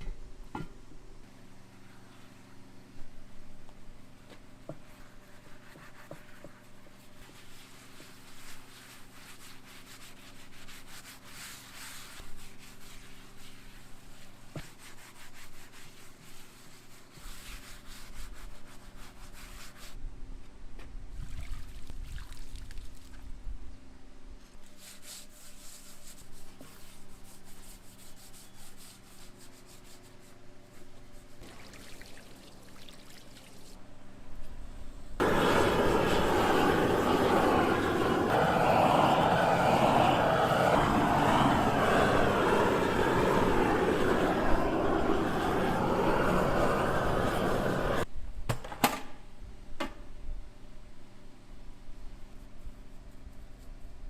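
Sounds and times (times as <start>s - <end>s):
low rumble: 35.2s - 48.0s.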